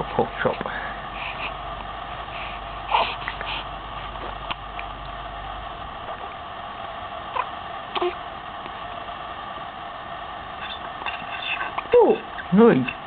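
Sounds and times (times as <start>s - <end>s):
steady background hiss: 0.0s - 13.0s
baby gurgling: 2.9s - 3.5s, 7.3s - 8.2s.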